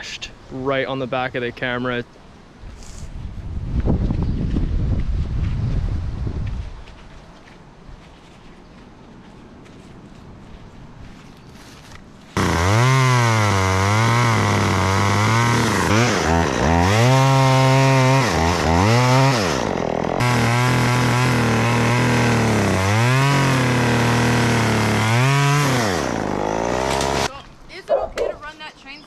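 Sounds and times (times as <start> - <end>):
chainsaw revving: 12.4 - 27.3.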